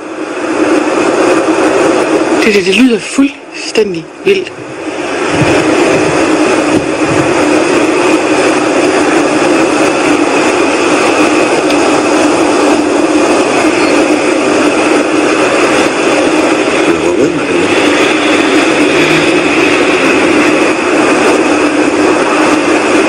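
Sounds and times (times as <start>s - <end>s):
loud whooshing drone: 0.0s - 23.0s
low hum: 3.3s - 23.0s.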